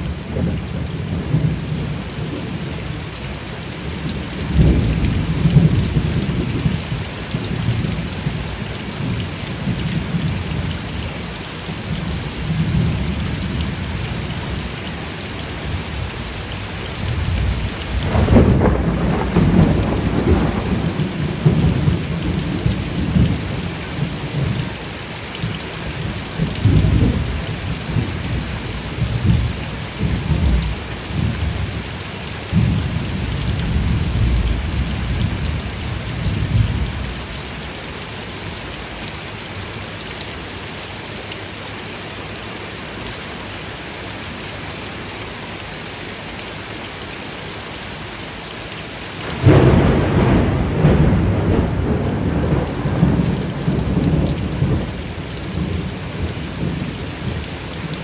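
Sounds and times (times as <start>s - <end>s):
steady rain: 0.0s - 58.0s
thunder rumbling: 4.5s - 8.4s, 17.0s - 24.6s, 32.5s - 37.2s, 49.2s - 58.0s.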